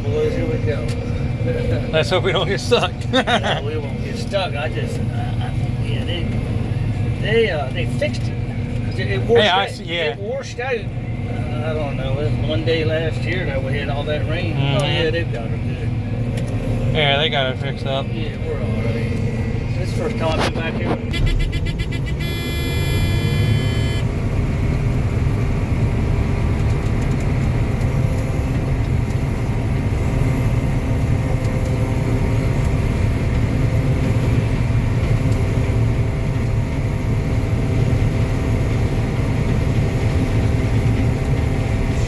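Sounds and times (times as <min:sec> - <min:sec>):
diesel engine drone: 0:00.0 - 0:42.0
high buzzing tone: 0:21.0 - 0:24.2.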